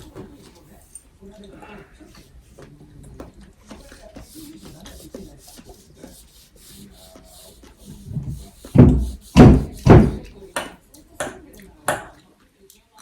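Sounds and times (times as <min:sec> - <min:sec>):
short rubbing bumps: 0:06.8 - 0:10.4.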